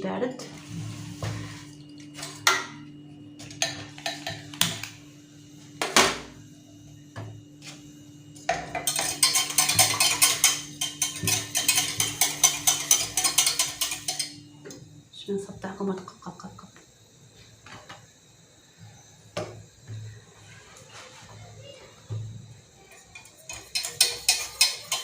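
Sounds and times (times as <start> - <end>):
spoon clinking against dish: 8.8 - 14.4, 23.2 - 25.0
spoon scraping while stirring: 8.8 - 14.4, 23.5 - 25.0.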